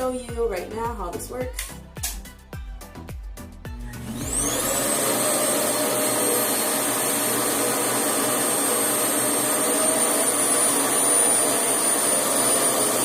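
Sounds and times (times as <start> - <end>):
background music with thumping beat: 0.0 - 4.5
hair dryer whine and air rush: 3.8 - 13.0.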